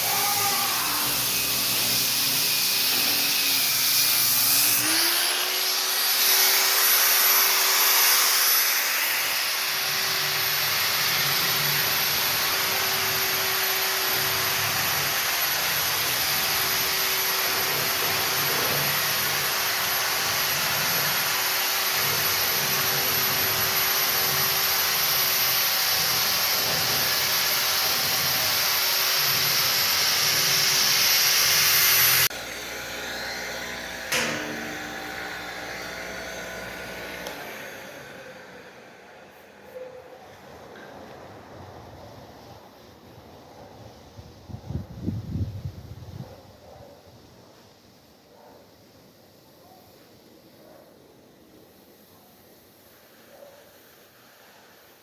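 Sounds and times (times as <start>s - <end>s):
electric power tool whining: 0.0s - 39.6s.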